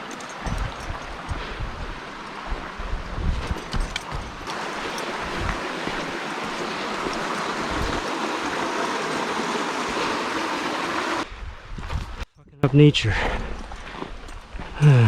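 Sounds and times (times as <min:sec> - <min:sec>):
creek water rushing: 0:00.0 - 0:03.1, 0:04.0 - 0:11.3.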